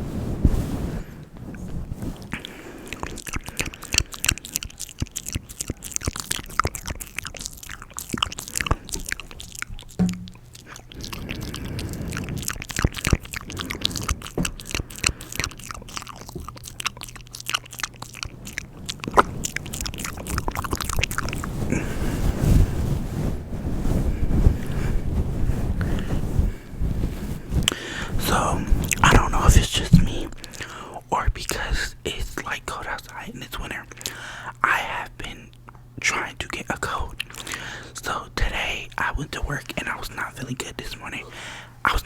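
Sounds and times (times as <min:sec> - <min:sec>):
wet mouth clicks and lip smacks: 0:02.2 - 0:21.5, 0:27.6 - 0:30.7, 0:37.1 - 0:37.6.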